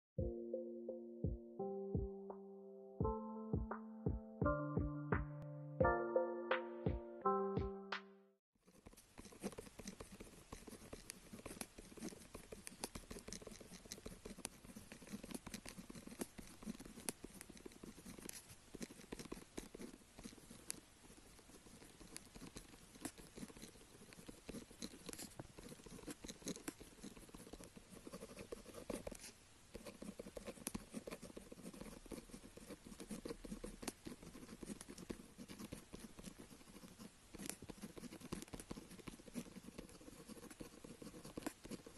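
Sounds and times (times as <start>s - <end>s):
pen scratching on paper: 8.6s - 41.9s.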